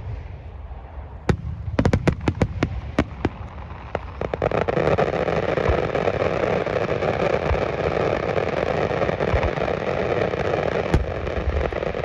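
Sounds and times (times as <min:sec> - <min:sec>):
firework cracks and pops: 0:00.0 - 0:12.0
firework bang: 0:01.3 - 0:06.1, 0:10.9 - 0:12.0.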